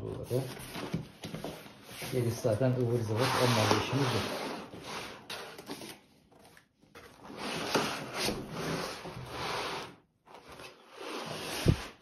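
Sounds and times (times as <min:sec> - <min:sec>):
cardboard and foam rubbing: 0:07.2 - 0:12.0.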